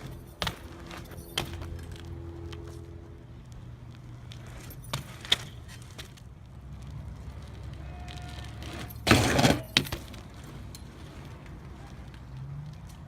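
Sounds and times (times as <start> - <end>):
bike rolling rumble: 0.0 - 13.0
impact and scrape: 8.0 - 11.3.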